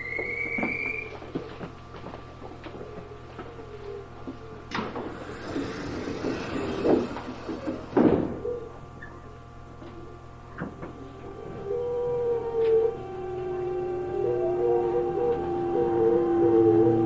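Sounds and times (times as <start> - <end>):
low steady train hum: 0.0 - 17.0
train doors closing with air rush: 4.7 - 8.4
doors shutting with heavy thud: 4.7 - 8.6.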